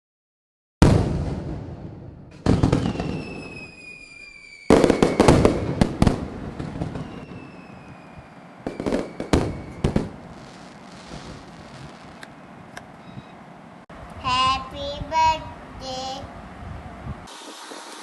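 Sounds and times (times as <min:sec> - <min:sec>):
fireworks crackling: 0:02.3 - 0:12.3, 0:17.3 - 0:18.0
whistle falling in pitch: 0:02.8 - 0:05.5, 0:07.0 - 0:09.9.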